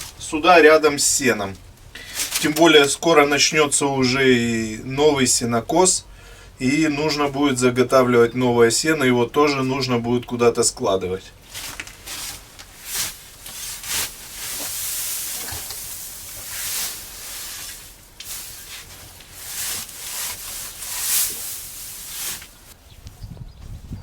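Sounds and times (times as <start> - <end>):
scythe swishing through grass: 11.4 - 22.8.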